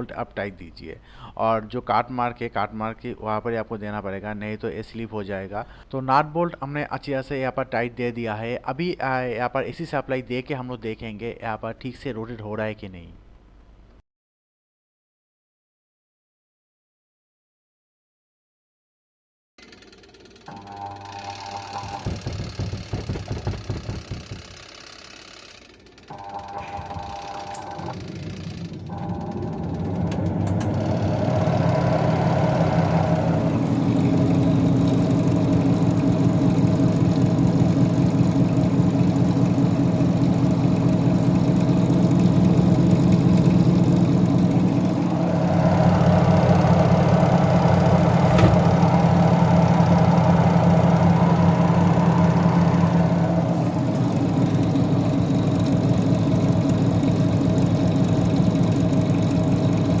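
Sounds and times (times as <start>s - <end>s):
washing machine spin motor humming: 19.6s - 60.0s.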